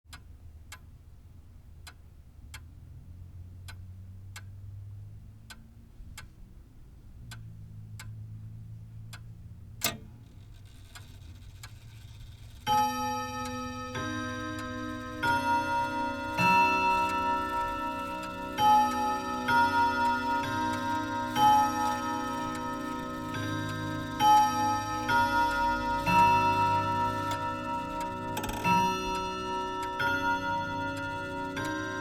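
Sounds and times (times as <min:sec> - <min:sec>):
clock ticking: 0:01.7 - 0:32.0
clock mechanism click and whirr: 0:09.1 - 0:32.0
clock striking ringing note: 0:12.0 - 0:32.0.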